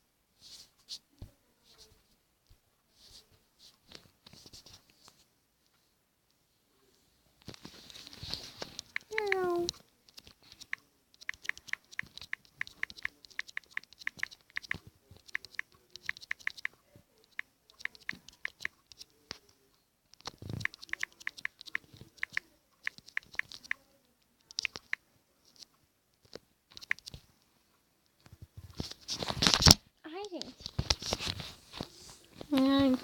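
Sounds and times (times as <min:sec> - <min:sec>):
typing on a keyboard: 0:08.8 - 0:19.2, 0:20.2 - 0:23.8, 0:24.4 - 0:25.7, 0:26.7 - 0:27.2.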